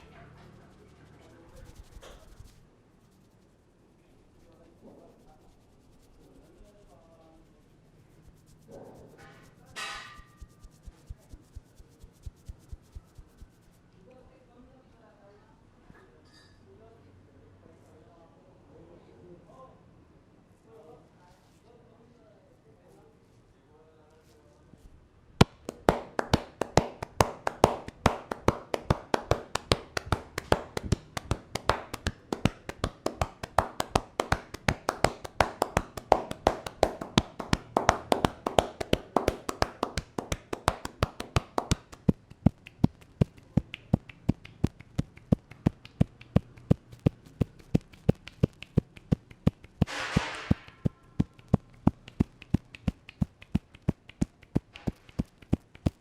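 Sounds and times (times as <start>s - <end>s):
hands tapping on head: 1.6s - 2.6s, 9.6s - 13.6s, 25.4s - 56.0s.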